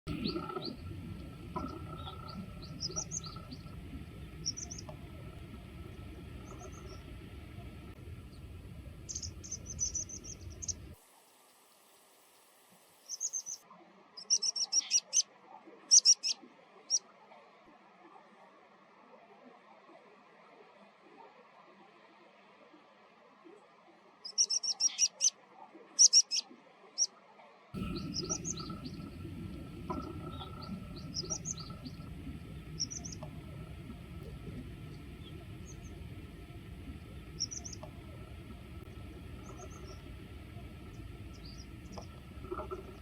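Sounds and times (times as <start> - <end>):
low rushing background: 0.1 - 11.0, 27.8 - 43.0
pipit calls: 1.6 - 3.8, 4.4 - 4.9, 9.1 - 10.9, 14.2 - 15.2, 15.9 - 17.0, 24.2 - 25.3, 26.0 - 27.1, 27.8 - 29.2, 29.9 - 33.3, 37.2 - 37.9.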